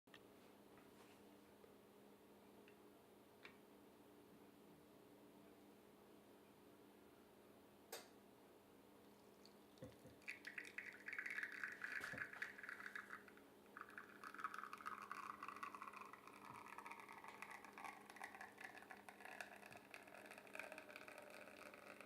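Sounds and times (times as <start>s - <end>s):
liquid pouring into a vessel: 9.1s - 22.0s.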